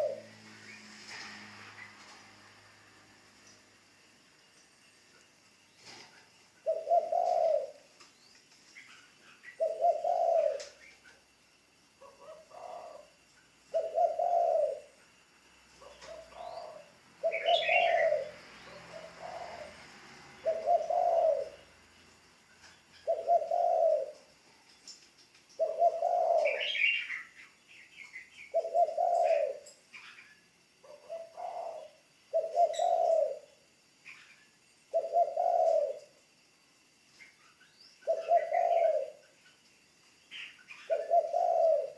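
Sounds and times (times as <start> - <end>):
dove cooing: 0.0 - 0.5, 5.8 - 8.0, 8.8 - 11.3, 12.0 - 15.0, 15.8 - 21.9, 23.0 - 24.4, 25.6 - 30.2, 30.8 - 34.3, 34.9 - 36.2, 38.0 - 39.4, 40.3 - 41.9
bird chirps: 15.8 - 21.7, 22.5 - 36.2, 37.1 - 41.9.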